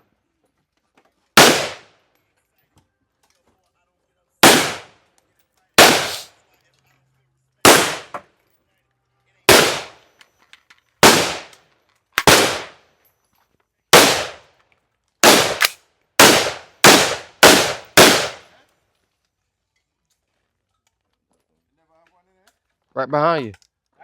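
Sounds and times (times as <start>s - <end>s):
gunshots with echo: 1.4s - 1.9s, 4.4s - 5.0s, 5.8s - 6.3s, 7.6s - 8.2s, 9.5s - 10.0s, 11.0s - 11.5s, 12.2s - 12.8s, 14.0s - 14.4s, 15.2s - 18.4s.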